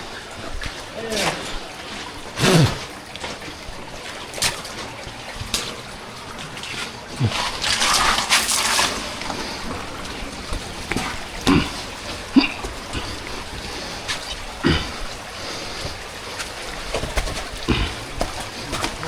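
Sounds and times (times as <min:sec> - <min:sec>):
water splashing and sloshing: 0:00.0 - 0:19.0.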